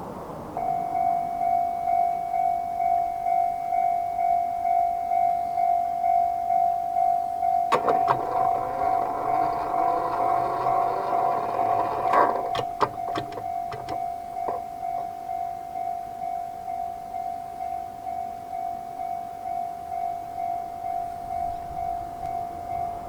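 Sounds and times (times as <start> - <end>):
level crossing warning bell: 0.5 - 23.0
electric train running: 7.7 - 15.2
wheel clacks over rail joints: 7.7 - 15.2.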